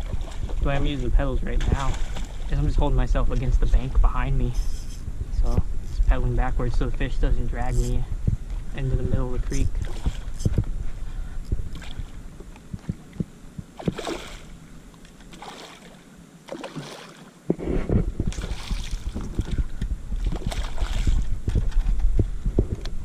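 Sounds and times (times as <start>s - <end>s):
water splashing around a kayak: 0.0s - 2.7s, 9.6s - 17.5s, 18.1s - 22.4s
microphone handling noise: 0.0s - 14.1s, 17.4s - 23.0s
wind rumble on microphone: 0.0s - 14.8s, 17.4s - 23.0s.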